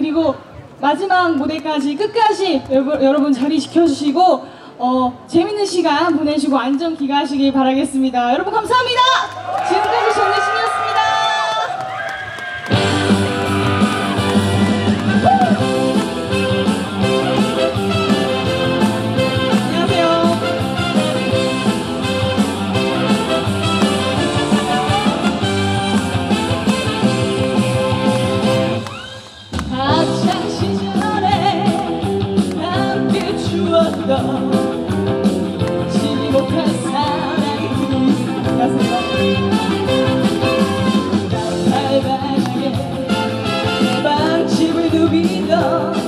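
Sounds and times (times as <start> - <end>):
upbeat band music with guitar: 12.7 - 46.0.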